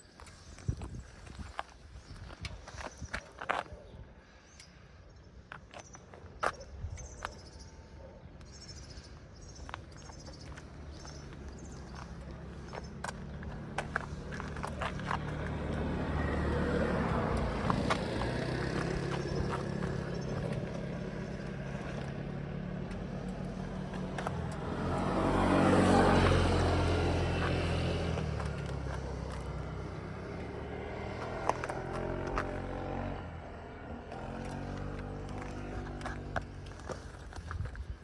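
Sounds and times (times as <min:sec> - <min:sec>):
motorcycle engine idling: 0:08.5 - 0:38.0.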